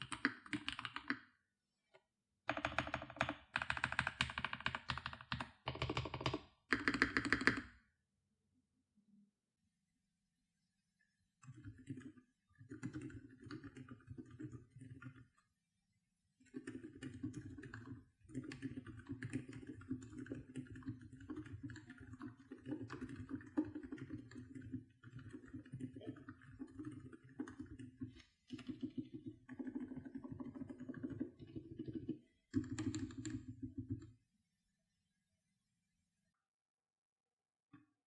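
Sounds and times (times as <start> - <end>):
fast typing on mechanical keyboard: 0.0 - 1.2, 2.5 - 7.7, 11.5 - 15.2, 16.6 - 34.0.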